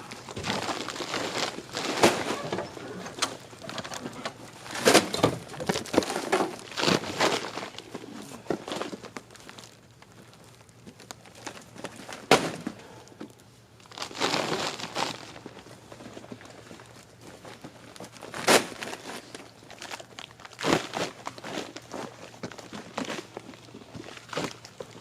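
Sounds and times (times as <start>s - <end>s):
rustling: 0.0s - 9.8s.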